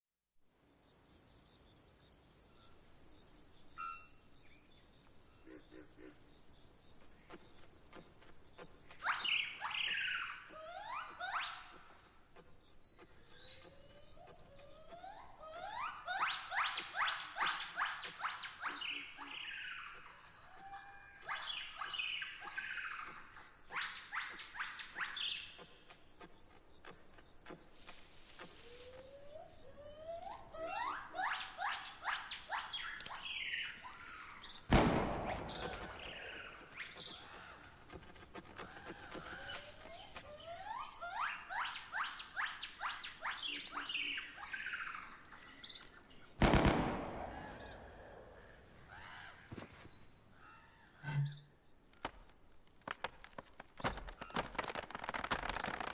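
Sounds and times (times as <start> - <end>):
high-pitched squeaks and chirps: 8.6 - 25.9, 26.5 - 34.6, 35.4 - 45.1
rising whistle-like chirps: 12.8 - 25.6.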